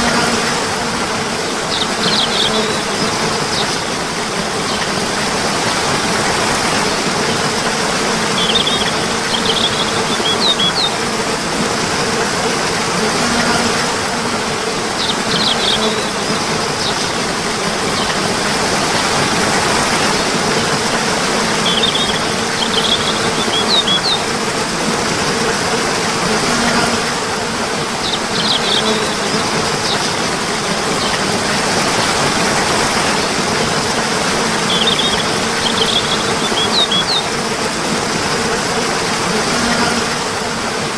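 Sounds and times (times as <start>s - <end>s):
running water: 0.0s - 40.9s
high bird chirps: 1.7s - 2.9s, 8.3s - 11.0s, 15.0s - 16.1s, 21.6s - 24.2s, 28.0s - 29.1s, 34.6s - 37.3s.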